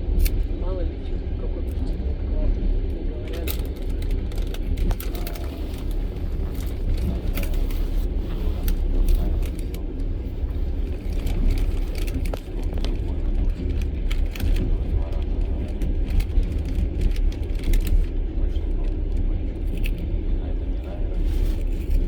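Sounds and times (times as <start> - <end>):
train carriage rumbling: 0.0 - 22.0
wheels clicking and rattling: 3.2 - 20.2.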